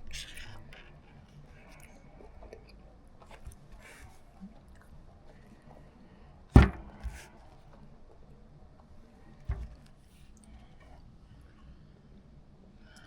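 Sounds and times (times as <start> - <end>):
sharp thump: 6.6 - 7.3, 9.5 - 9.8.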